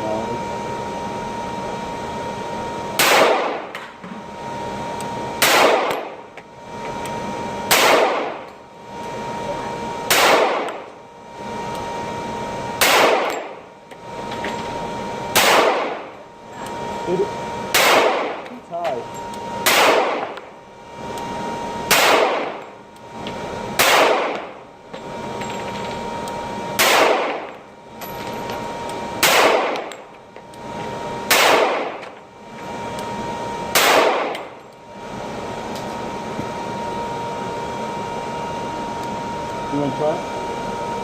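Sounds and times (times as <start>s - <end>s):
pistol shots with echo: 3.0s - 3.8s, 5.4s - 6.1s, 7.7s - 8.4s, 10.1s - 10.8s, 12.8s - 13.5s, 15.4s - 16.0s, 17.7s - 18.5s, 19.6s - 20.4s, 21.9s - 22.6s, 23.8s - 24.5s, 26.8s - 27.5s, 29.2s - 29.9s, 31.3s - 32.0s, 33.7s - 34.4s.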